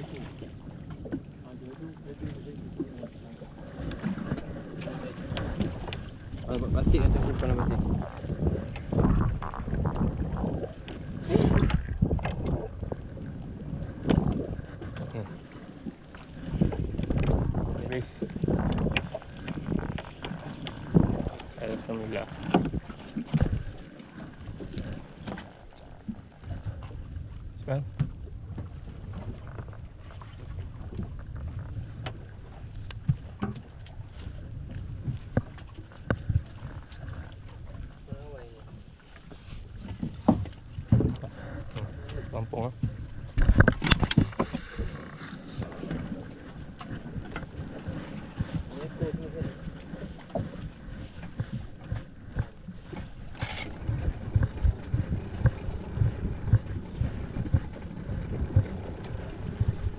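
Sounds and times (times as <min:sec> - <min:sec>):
water around boat: 0:00.0 - 0:59.9
wind on microphone: 0:02.1 - 0:59.9
low thumps: 0:53.3 - 0:59.9.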